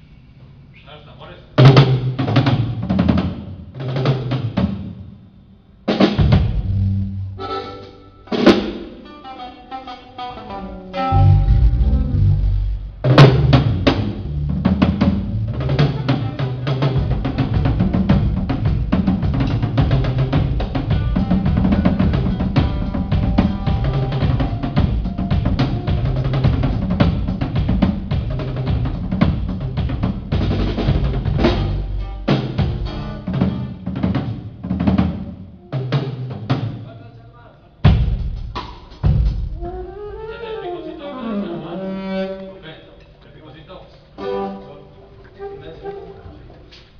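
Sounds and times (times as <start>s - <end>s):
drum kit playing: 1.6s - 5.1s, 5.8s - 36.9s, 37.8s - 40.3s
low bass notes: 6.2s - 7.5s, 10.8s - 33.8s.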